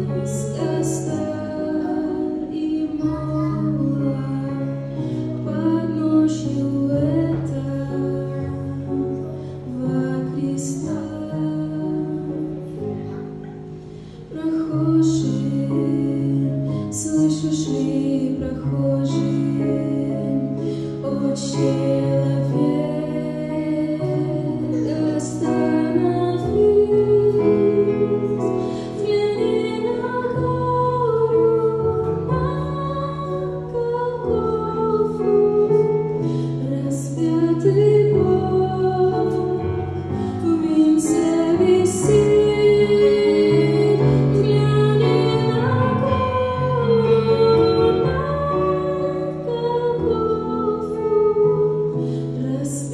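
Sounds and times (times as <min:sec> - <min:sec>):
woman singing: 0:00.0 - 0:12.8, 0:14.2 - 0:52.9.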